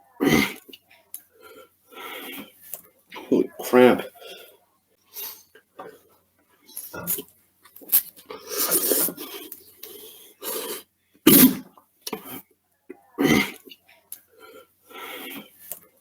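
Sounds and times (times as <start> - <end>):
person coughing and hacking: 11.3 - 11.7.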